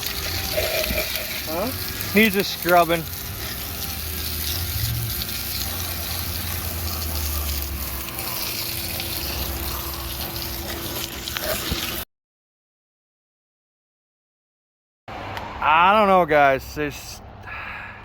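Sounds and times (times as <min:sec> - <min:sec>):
water spraying on wheel: 0:00.0 - 0:12.0.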